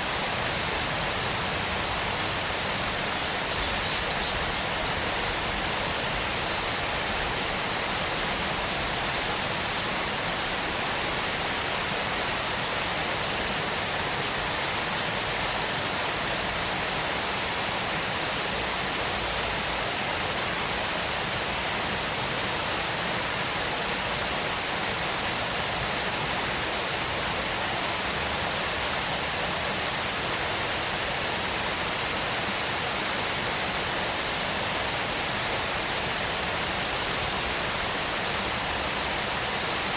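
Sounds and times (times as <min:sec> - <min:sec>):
waterfall rushing: 0:00.0 - 0:39.9.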